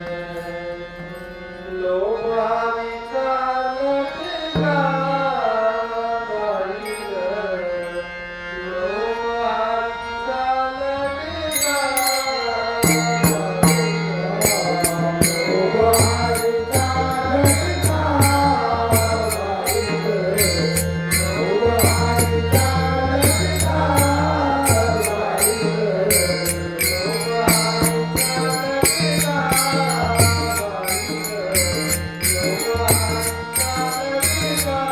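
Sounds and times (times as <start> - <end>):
man singing devotional song: 0.0 - 34.9
held accompaniment: 11.0 - 34.9
hand cymbals beating: 11.5 - 34.9.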